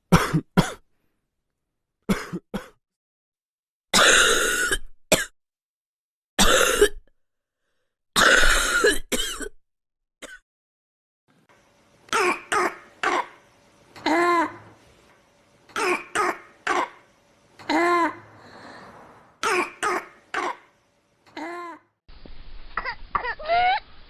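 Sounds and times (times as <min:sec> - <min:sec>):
person coughing: 0:00.1 - 0:00.8, 0:02.1 - 0:02.8, 0:04.0 - 0:05.3, 0:06.4 - 0:07.1, 0:08.2 - 0:09.6, 0:12.1 - 0:13.4, 0:15.7 - 0:18.2, 0:19.4 - 0:20.7.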